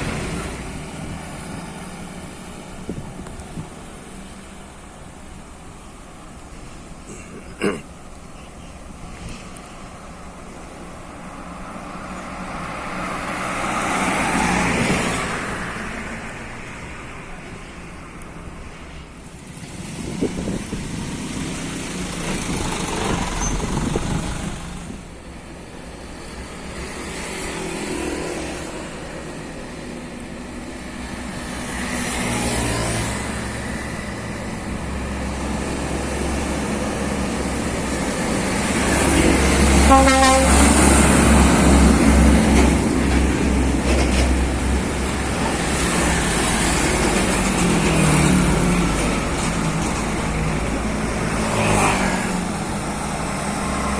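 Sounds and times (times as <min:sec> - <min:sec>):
truck diesel engines passing: 0:00.0 - 0:53.9
truck horn toot: 0:39.8 - 0:40.8.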